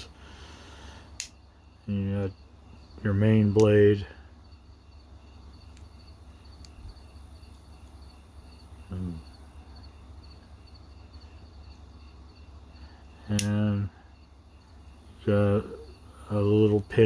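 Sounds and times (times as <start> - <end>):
crickets chirping: 0.0 - 17.0
low background hum: 0.0 - 17.0
man's voice murmuring: 15.2 - 17.0.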